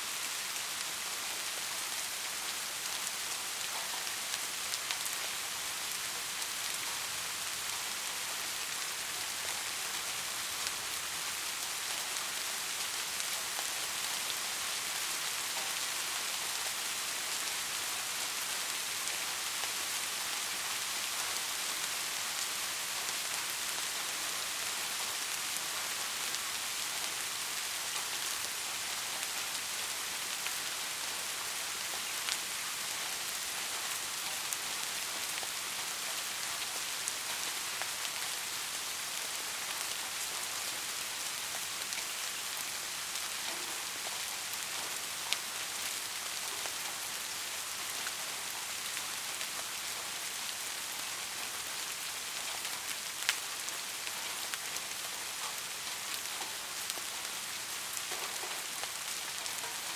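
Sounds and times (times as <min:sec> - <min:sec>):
steady rain hiss: 0:00.0 - 0:59.9
raindrops hitting: 0:51.3 - 0:59.9.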